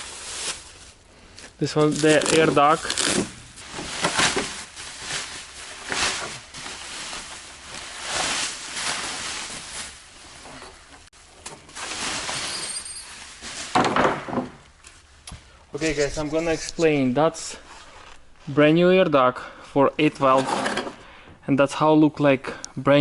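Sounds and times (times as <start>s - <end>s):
plastic duct rustling and scraping: 0.0s - 13.9s.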